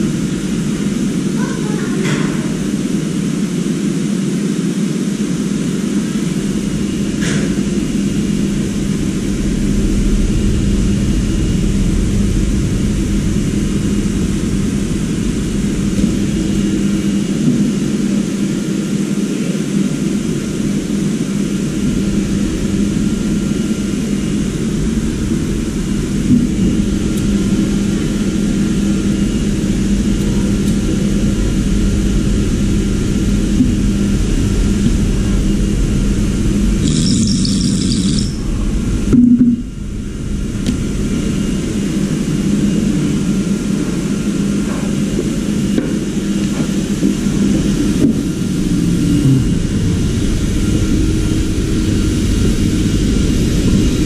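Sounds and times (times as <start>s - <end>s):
motorised machine humming: 20.2s - 54.0s.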